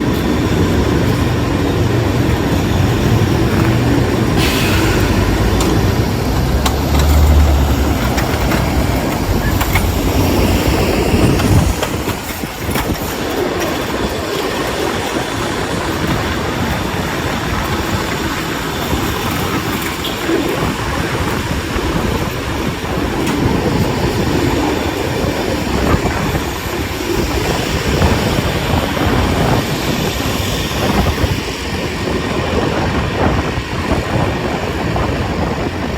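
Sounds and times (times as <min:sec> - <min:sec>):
heavy vehicle rumbling past: 0:01.2 - 0:12.1.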